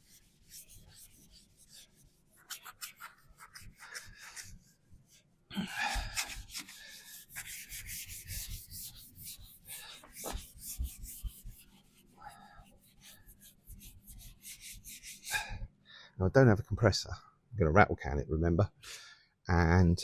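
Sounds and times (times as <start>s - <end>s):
hand sanding with abrasive pad: 0.0s - 4.8s, 6.0s - 15.5s.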